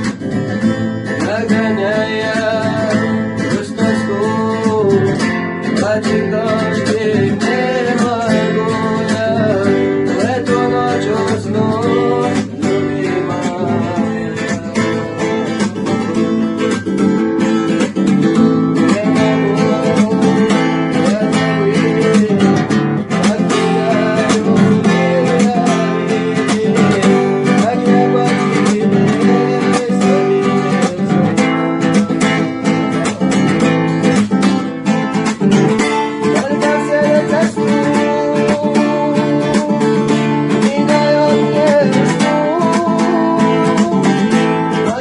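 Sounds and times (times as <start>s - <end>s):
acoustic guitar playing: 0.0s - 45.0s.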